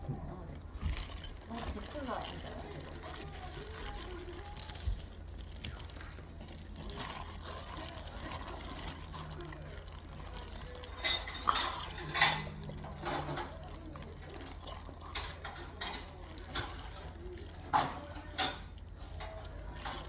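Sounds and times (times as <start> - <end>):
dishes and cutlery clinking: 6.8 - 20.0.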